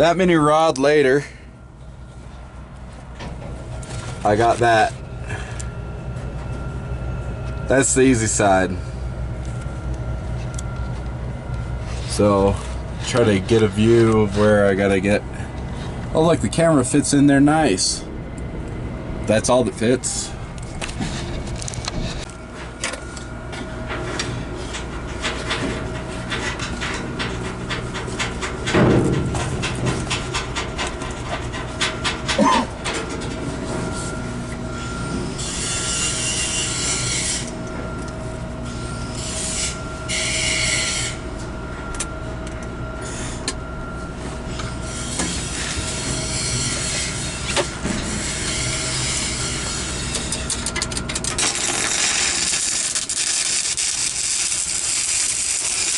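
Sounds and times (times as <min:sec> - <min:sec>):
steady industrial hum: 0:00.0 - 0:55.9
welding arc crackling: 0:48.3 - 0:55.9.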